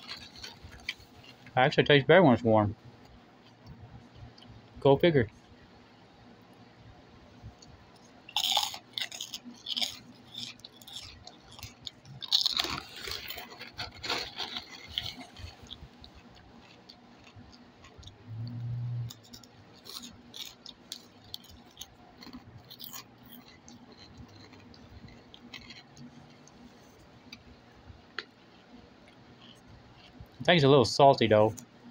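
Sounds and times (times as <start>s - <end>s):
crunchy chewing: 0.0s - 1.6s, 3.0s - 5.6s, 7.4s - 30.6s
low hum: 18.0s - 20.7s.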